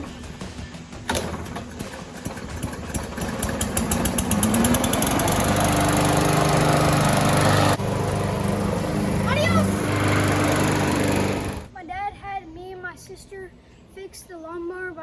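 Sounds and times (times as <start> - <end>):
push mower engine: 1.0 - 11.7.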